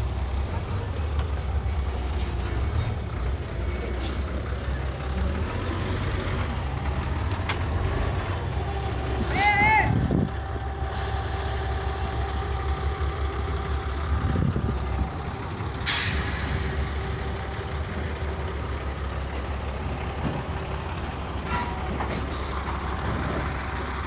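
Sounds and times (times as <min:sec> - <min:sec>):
large vehicle engine rumbling: 0:00.0 - 0:24.0
air release hiss: 0:15.9 - 0:17.3.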